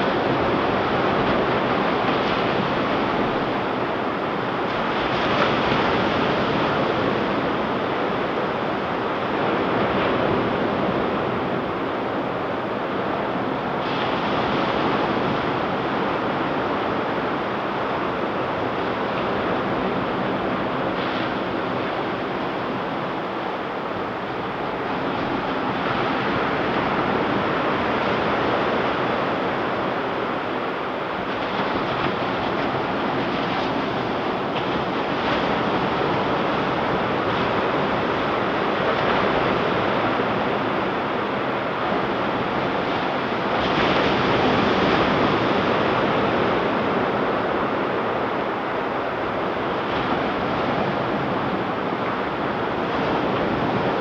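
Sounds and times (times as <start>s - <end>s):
ocean waves breaking on beach: 0.0s - 54.0s
wind on microphone: 0.0s - 54.0s.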